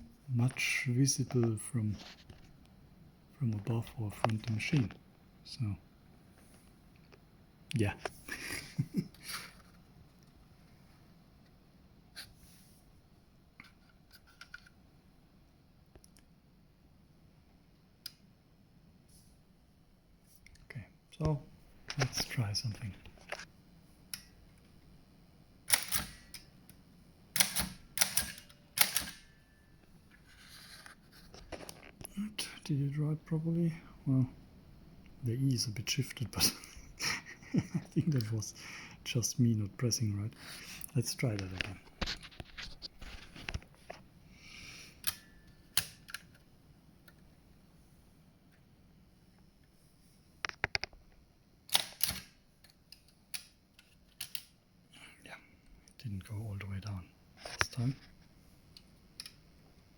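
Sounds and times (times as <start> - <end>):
typewriter mechanism clicks: 25.7 - 26.5, 27.4 - 29.3, 51.7 - 52.3.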